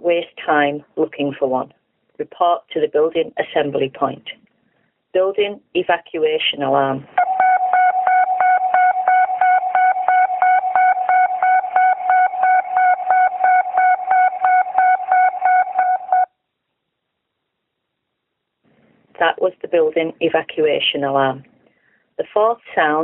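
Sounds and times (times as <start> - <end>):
pulsing evacuation alarm tone: 7.2 - 16.3.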